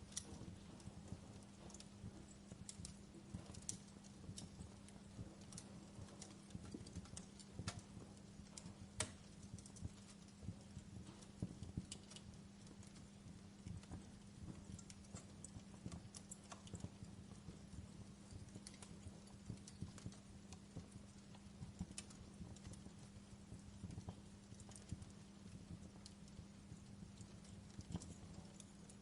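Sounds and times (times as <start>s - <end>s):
campfire crackling and popping: 0.0s - 29.0s
low rumble of burning: 0.0s - 29.0s.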